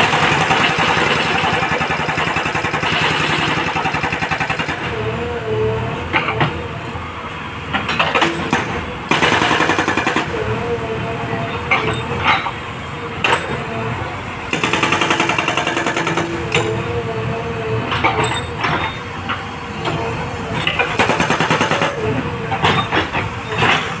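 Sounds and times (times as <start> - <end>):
diesel engine running: 0.0 - 24.0
hydraulic breaker hammering: 14.5 - 16.8, 20.6 - 24.0.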